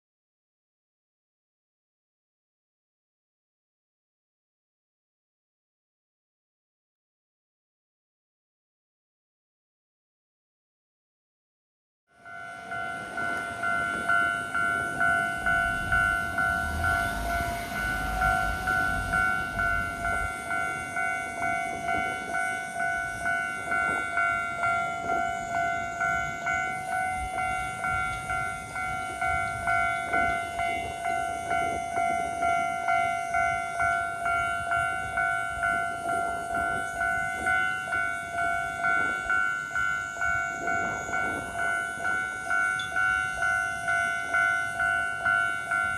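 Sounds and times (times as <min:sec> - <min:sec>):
level-crossing alarm bell: 0:12.2 - 0:45.9
low rumble: 0:15.4 - 0:20.6.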